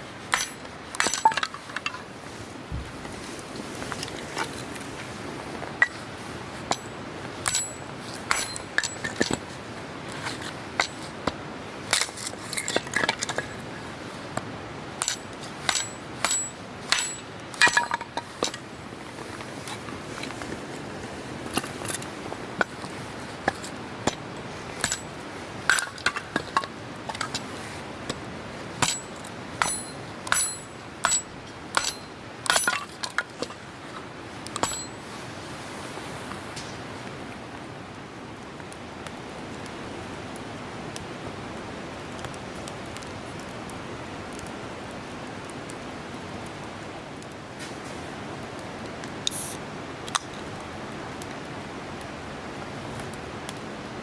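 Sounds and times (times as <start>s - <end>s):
steady background hiss: 0.0s - 54.0s
metallic clinks and knocks: 0.3s - 2.0s, 15.0s - 18.6s, 25.7s - 27.4s, 28.8s - 33.6s, 34.6s - 35.0s.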